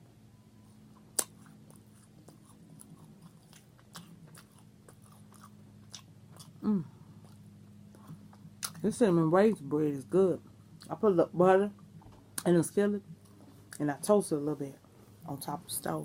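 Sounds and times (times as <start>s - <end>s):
person chewing and smacking: 1.0s - 8.9s
person humming mm: 6.6s - 7.0s.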